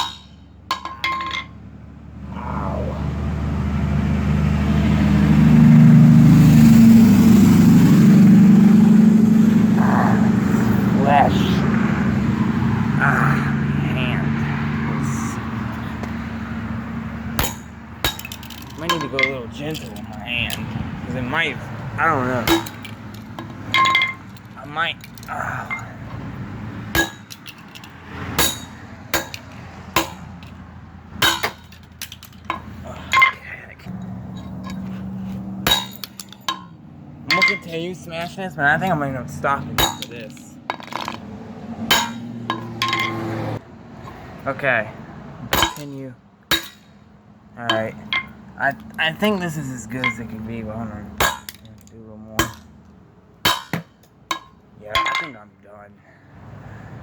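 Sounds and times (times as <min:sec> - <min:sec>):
motor engine droning: 0:01.6 - 0:18.1.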